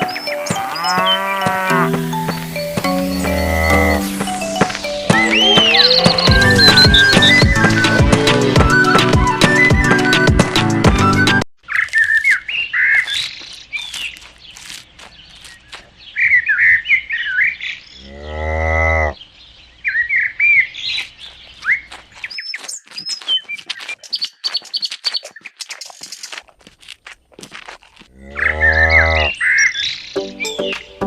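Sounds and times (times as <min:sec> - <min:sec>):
small birds chirping: 0:00.0 - 0:10.7, 0:11.6 - 0:31.0
cow mooing: 0:18.0 - 0:19.2, 0:28.1 - 0:29.4.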